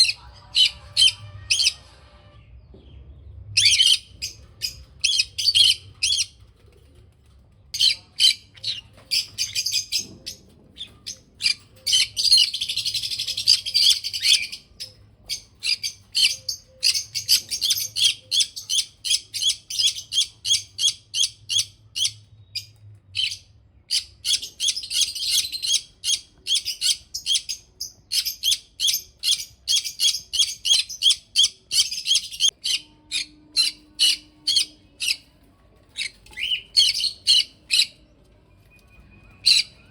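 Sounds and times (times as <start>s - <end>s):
parrots chirping: 0.0s - 2.0s, 3.6s - 6.5s, 7.8s - 35.2s, 36.0s - 38.1s, 39.2s - 39.9s.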